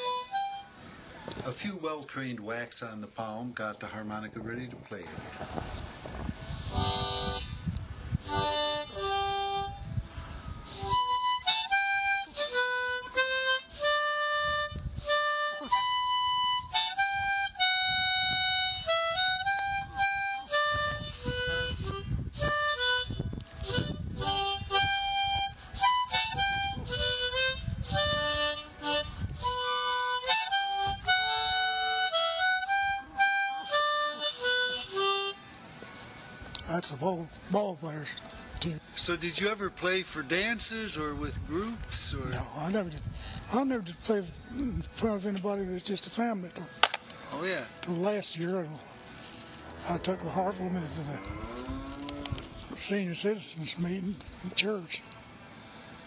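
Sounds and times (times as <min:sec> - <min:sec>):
harmonica playing a tune: 0:00.0 - 0:01.0, 0:06.6 - 0:36.3.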